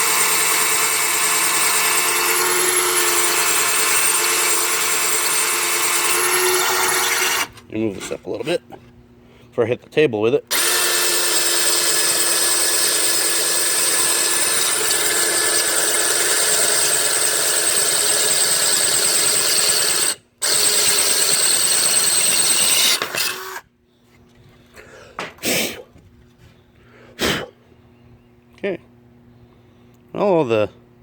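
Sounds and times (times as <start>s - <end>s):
electric drill boring through tile: 0.0s - 7.6s, 10.5s - 23.6s.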